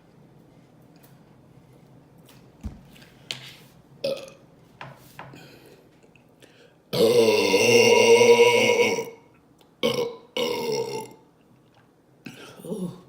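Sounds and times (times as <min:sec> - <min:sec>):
woman burping: 0:06.9 - 0:09.2, 0:09.8 - 0:11.2, 0:12.3 - 0:13.0.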